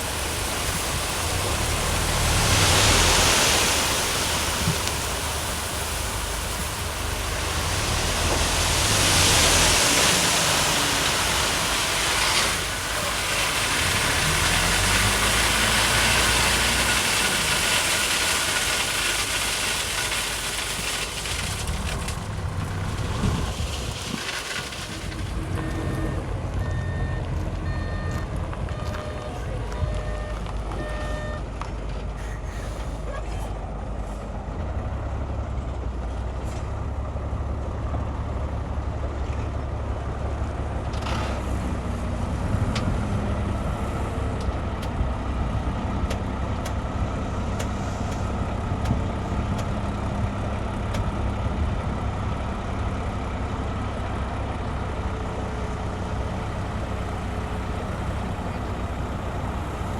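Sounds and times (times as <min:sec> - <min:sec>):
heavy diesel engines rumbling: 0:00.0 - 0:59.9.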